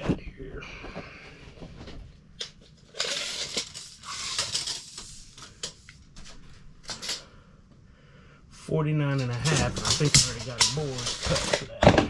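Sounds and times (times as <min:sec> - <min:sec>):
scraping and rustling: 0:01.4 - 0:07.3, 0:09.1 - 0:12.0.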